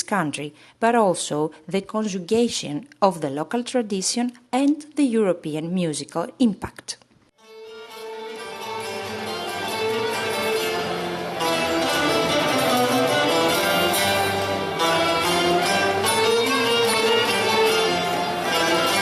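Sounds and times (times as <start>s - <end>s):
orchestra playing: 7.4s - 19.0s.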